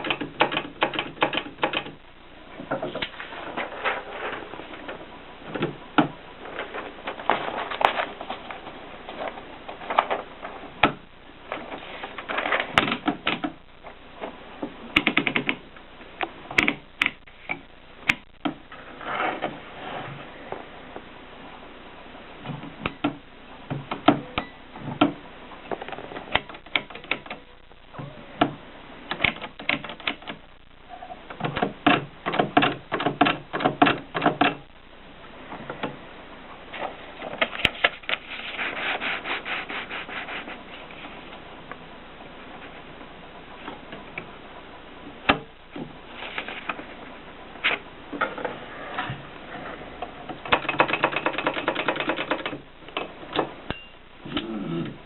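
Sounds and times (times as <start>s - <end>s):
typewriter clicking: 0.0s - 2.0s, 15.0s - 15.6s, 26.3s - 27.4s, 29.1s - 30.4s, 31.4s - 34.6s, 50.4s - 53.0s.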